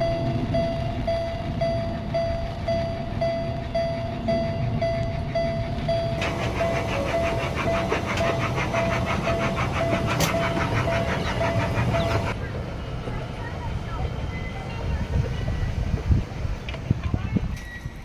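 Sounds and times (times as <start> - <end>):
railway crossing bell dinging: 0.0 - 12.4
small train rattling over crossing: 0.0 - 18.0.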